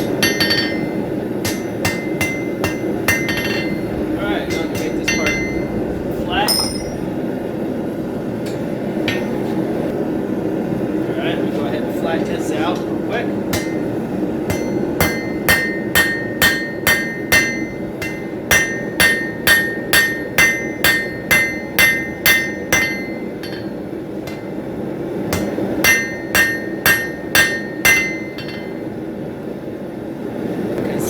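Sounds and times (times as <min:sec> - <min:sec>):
anvil ringing: 0:00.0 - 0:03.9, 0:04.5 - 0:05.7, 0:06.5 - 0:07.1, 0:08.5 - 0:09.5, 0:13.5 - 0:13.9, 0:14.5 - 0:24.6, 0:25.3 - 0:28.9
hammer striking steel on anvil: 0:00.0 - 0:03.9, 0:04.5 - 0:05.7, 0:08.4 - 0:09.6, 0:13.5 - 0:28.9
steady low roar: 0:02.7 - 0:11.1.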